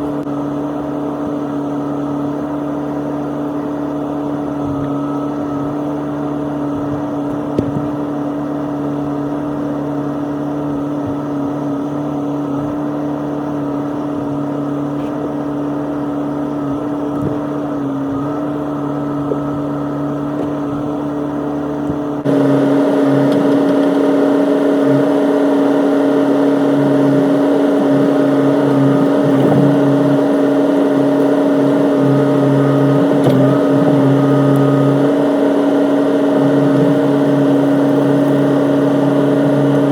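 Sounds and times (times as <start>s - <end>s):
excavator engine humming: 0.0s - 39.9s.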